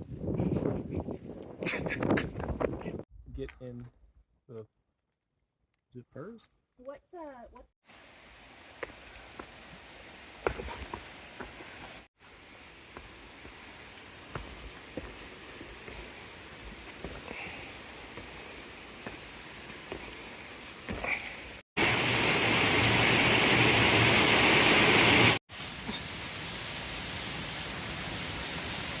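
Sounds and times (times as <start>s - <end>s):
loud hissing rush: 7.9s - 29.0s.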